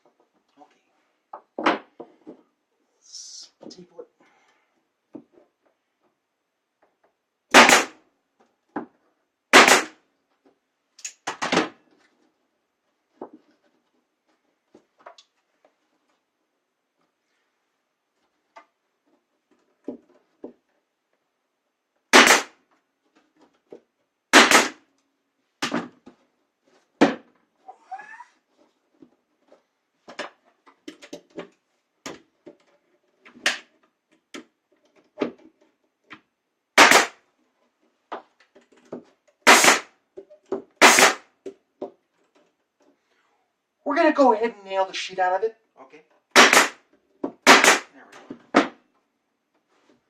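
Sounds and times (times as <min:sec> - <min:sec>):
nail gun shots: 0:07.5 - 0:08.0, 0:09.5 - 0:10.0, 0:22.1 - 0:22.6, 0:24.3 - 0:24.8, 0:36.8 - 0:37.2, 0:39.4 - 0:39.9, 0:40.8 - 0:41.3, 0:46.3 - 0:46.8, 0:47.4 - 0:47.9.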